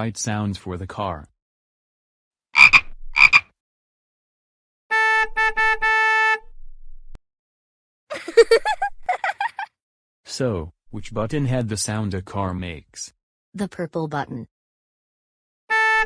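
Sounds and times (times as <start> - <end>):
warbling croak-like call: 2.6 - 3.5
car horn honking: 4.9 - 6.4.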